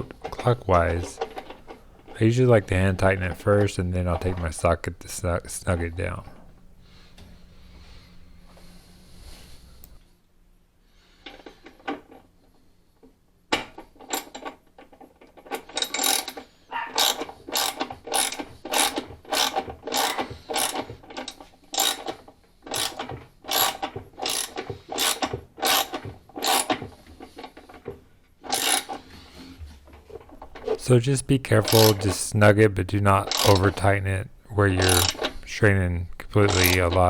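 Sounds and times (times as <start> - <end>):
ratchet wrench clicking: 15.7 - 16.4, 17.0 - 22.1, 22.7 - 26.8, 28.5 - 29.0, 33.3 - 33.8, 34.8 - 35.3, 36.4 - 36.9.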